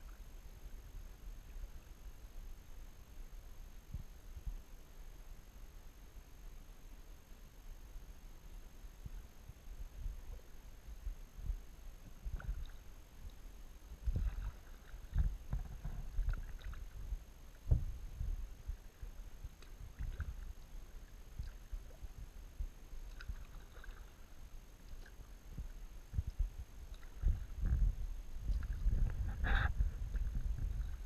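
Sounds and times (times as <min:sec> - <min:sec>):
paddle splashes: 0:14.0 - 0:17.9, 0:18.6 - 0:22.4, 0:23.0 - 0:31.0.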